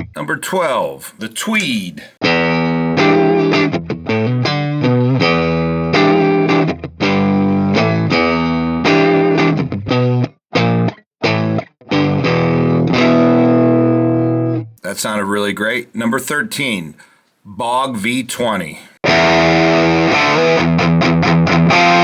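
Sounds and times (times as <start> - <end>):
electric guitar chords and riffs: 2.2 - 14.8, 19.0 - 22.0.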